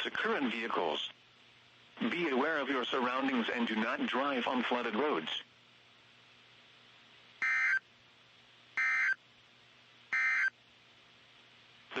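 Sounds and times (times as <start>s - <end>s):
faint steady hum: 0.0s - 12.0s
high-pitched data tone bursts: 7.4s - 7.8s, 8.8s - 9.2s, 10.1s - 10.5s.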